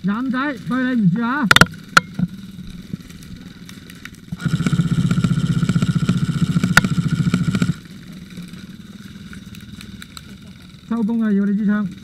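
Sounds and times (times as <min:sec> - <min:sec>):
airsoft gun full-auto burst: 0:04.3 - 0:07.8.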